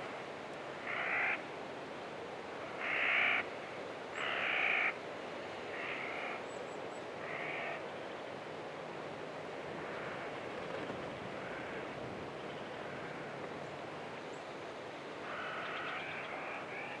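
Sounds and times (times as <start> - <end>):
wind-like desert hiss: 0.0 - 17.0
crow cawing: 0.8 - 1.4, 2.8 - 3.4, 4.2 - 5.0, 5.7 - 6.4, 7.2 - 7.8, 15.2 - 16.6.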